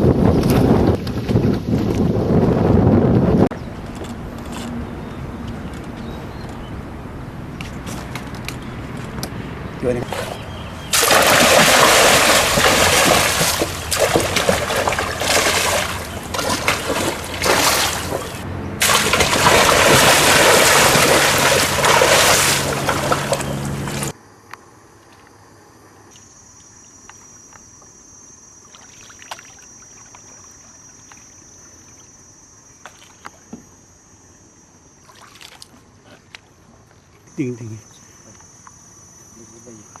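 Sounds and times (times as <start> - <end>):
rushing splashing water: 10.0 - 24.1.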